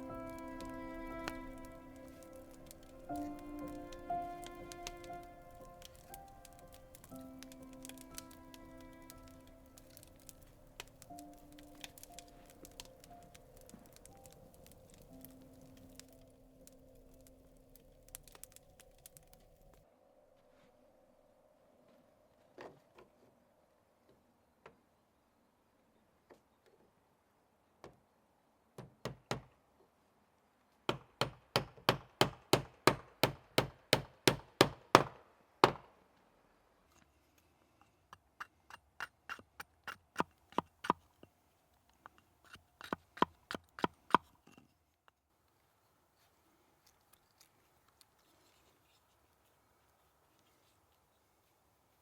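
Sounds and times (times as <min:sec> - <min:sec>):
hand tool striking wood: 0:30.9 - 0:35.9, 0:42.5 - 0:44.3.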